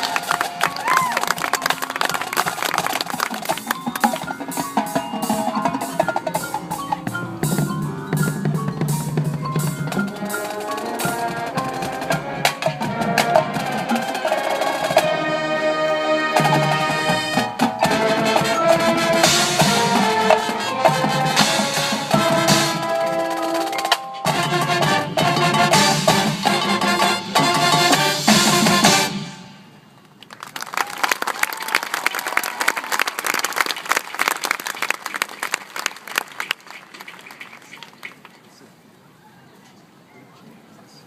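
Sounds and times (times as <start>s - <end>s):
drums and percussion: 0.0s - 29.8s
marching band playing: 0.0s - 29.9s.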